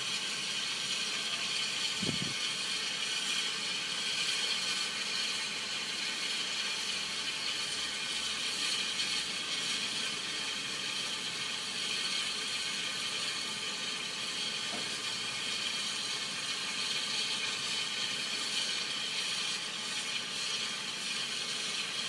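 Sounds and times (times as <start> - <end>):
steam locomotive hissing: 0.0 - 22.0
mechanical whir: 2.0 - 2.4.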